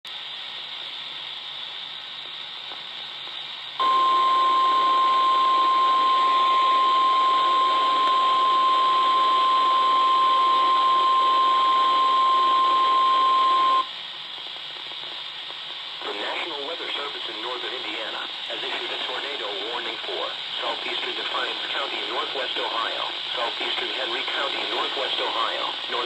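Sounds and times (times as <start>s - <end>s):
radio static: 3.8s - 13.8s, 16.0s - 26.0s
steady alarm tone: 3.8s - 13.9s.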